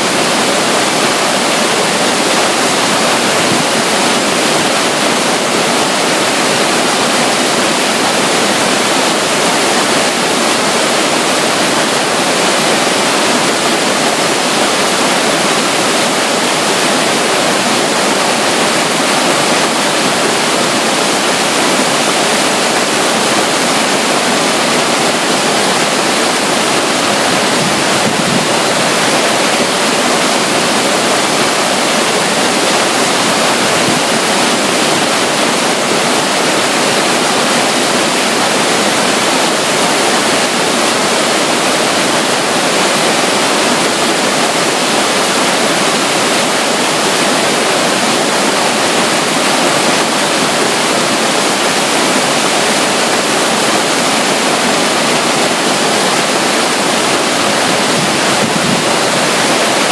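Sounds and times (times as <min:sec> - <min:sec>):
waterfall rushing water: 0:00.0 - 0:59.9.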